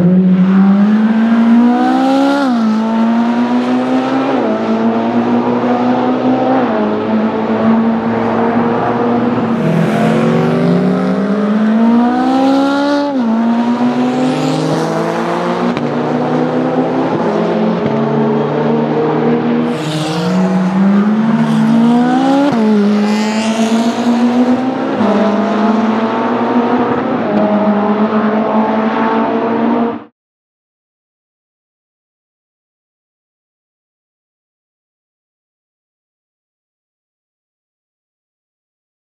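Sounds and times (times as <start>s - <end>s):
car engine accelerating hard: 0.0s - 30.1s.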